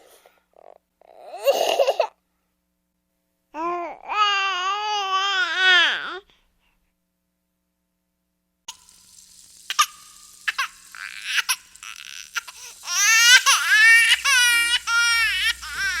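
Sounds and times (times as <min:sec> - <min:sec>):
infant crying: 0:10.3 - 0:16.0.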